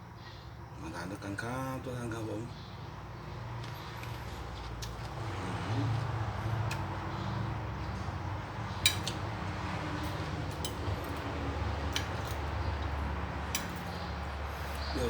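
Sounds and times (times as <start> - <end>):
light clicks and clinks: 8.7 - 15.0.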